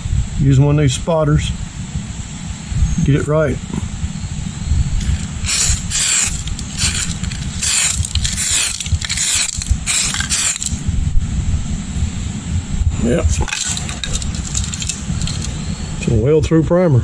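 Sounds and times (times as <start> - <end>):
aerosol can spraying: 5.0 - 10.8, 13.4 - 15.5.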